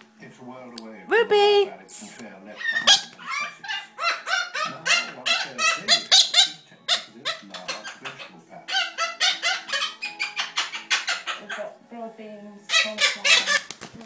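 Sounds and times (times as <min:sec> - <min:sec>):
parrot squawking and chattering: 0:02.5 - 0:11.8, 0:12.6 - 0:13.8.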